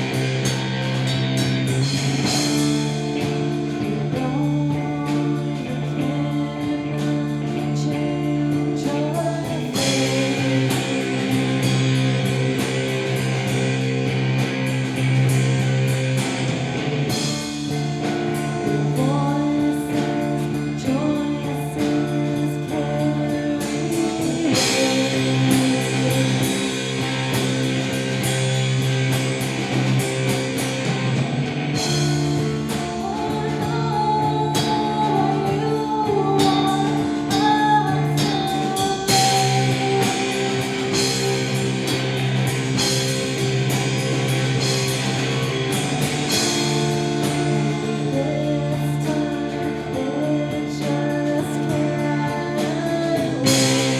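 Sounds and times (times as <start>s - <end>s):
rock band playing: 0.0s - 53.9s
person singing: 1.8s - 14.5s, 17.2s - 28.2s, 31.8s - 43.5s, 46.3s - 53.9s.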